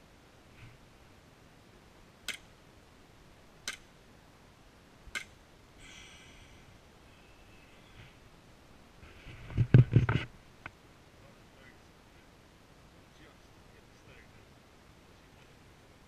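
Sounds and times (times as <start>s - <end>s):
faint ringing tone: 5.8s - 8.2s.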